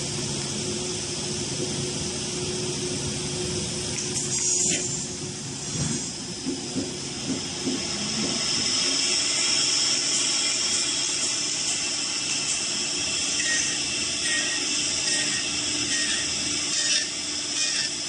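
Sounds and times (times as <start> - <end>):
machine steady high hiss: 8.9 - 18.0.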